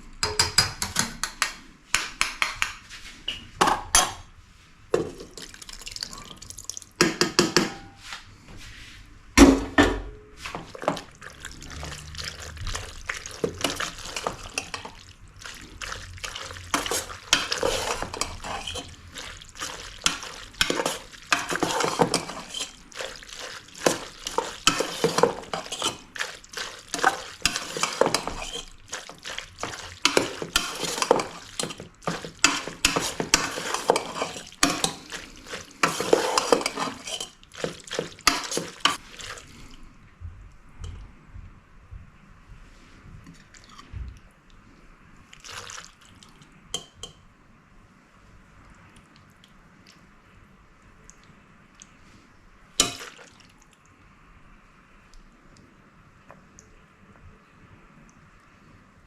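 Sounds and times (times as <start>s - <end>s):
utensil scraping in a pan: 10.3s - 39.7s.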